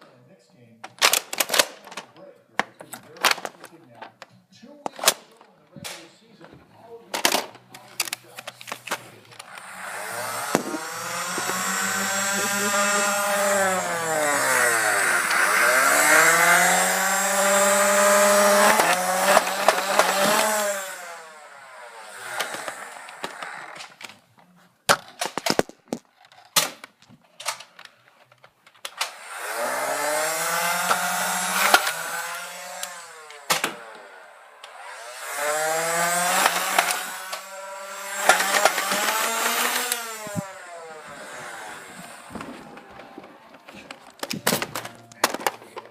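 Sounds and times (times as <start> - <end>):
motor running: 9.3 - 24.1, 29.0 - 45.4
sharp clicks or knocks: 10.4 - 20.8, 24.9 - 29.2, 30.6 - 33.8, 36.3 - 37.4, 38.0 - 40.5, 41.4 - 45.9.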